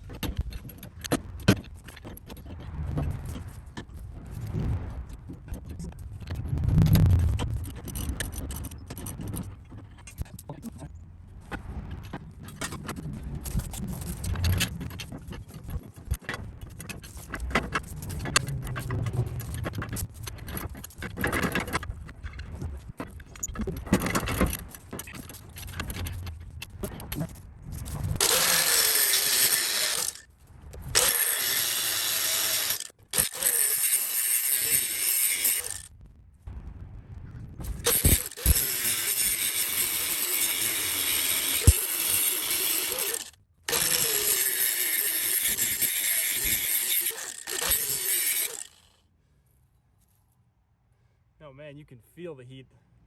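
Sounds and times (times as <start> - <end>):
power cutting tool: 28.2 - 30.2, 31.0 - 35.9, 37.9 - 48.9.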